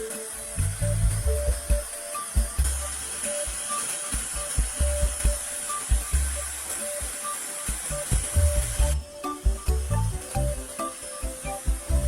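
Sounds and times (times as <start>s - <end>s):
constant high hiss: 0.0s - 12.0s
music with thumping bass beat: 0.0s - 12.0s.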